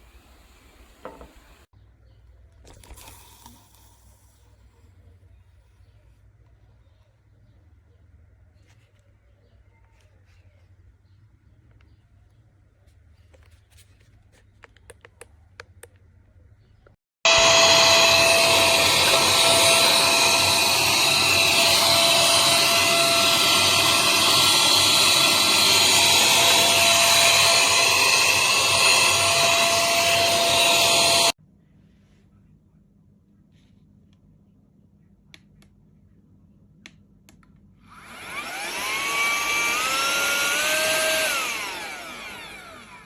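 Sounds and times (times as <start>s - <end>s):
handheld vacuum cleaner running: 0.1s - 1.5s, 17.3s - 31.4s, 37.9s - 43.0s.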